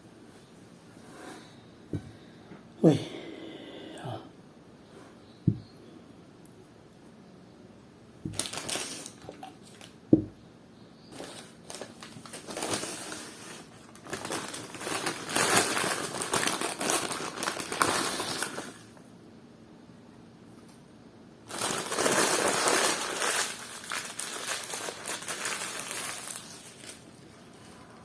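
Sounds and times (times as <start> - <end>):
packaging crinkling: 8.3 - 10.0, 11.1 - 19.0, 21.5 - 27.6.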